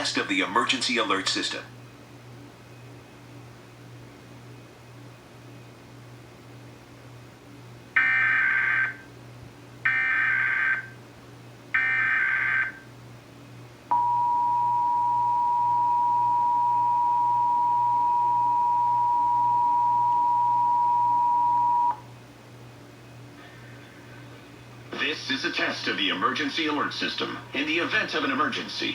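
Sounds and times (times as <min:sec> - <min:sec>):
two-tone attention signal: 0:13.9 - 0:22.0.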